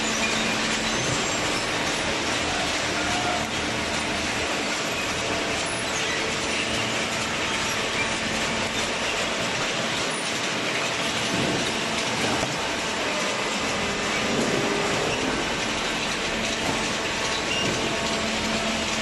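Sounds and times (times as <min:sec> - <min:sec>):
hydraulic baler running: 0:00.0 - 0:19.0.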